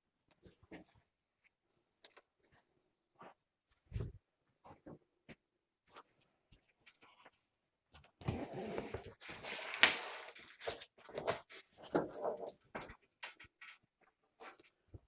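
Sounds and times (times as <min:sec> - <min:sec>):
rustling and scraping: 0:08.0 - 0:13.8.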